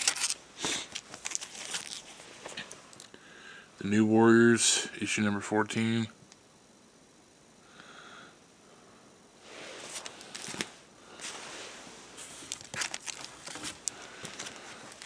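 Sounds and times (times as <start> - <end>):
comic books rustling and crinkling: 0.0 - 2.6, 9.5 - 15.0.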